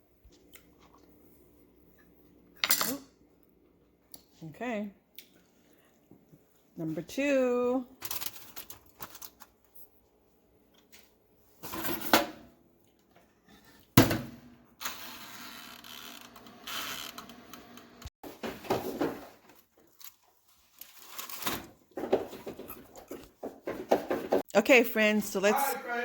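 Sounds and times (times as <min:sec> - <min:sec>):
kitchen knocks and clatters: 0:11.6 - 0:12.5, 0:18.2 - 0:19.6, 0:21.4 - 0:24.5.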